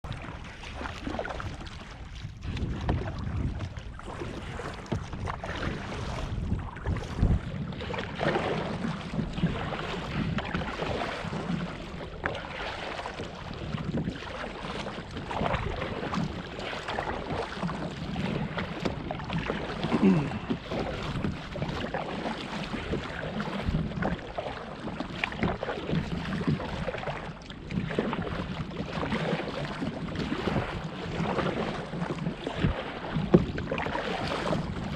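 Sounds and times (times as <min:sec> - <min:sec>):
water lapping against a kayak: 0:00.0 - 0:34.9
wind buffeting microphone: 0:00.1 - 0:11.9, 0:32.5 - 0:34.9.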